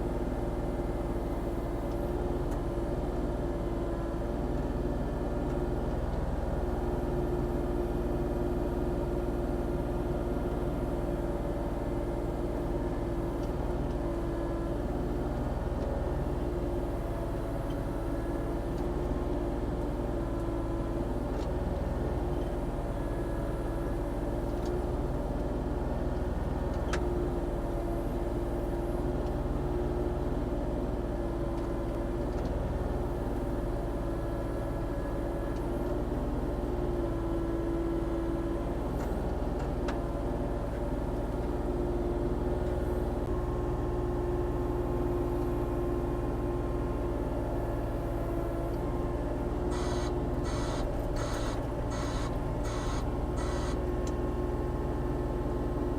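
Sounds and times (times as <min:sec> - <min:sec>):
diesel engine running: 0:44.5 - 0:55.9.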